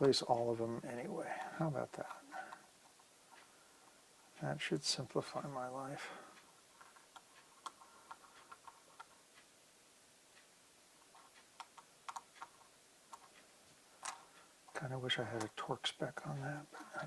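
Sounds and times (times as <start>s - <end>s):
screwdriver clicks and ticks: 11.3s - 13.4s.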